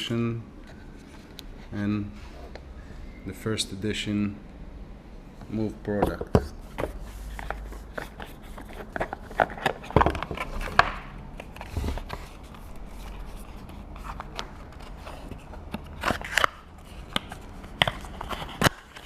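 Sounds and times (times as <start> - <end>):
packaging being handled and opened: 6.0 - 19.0.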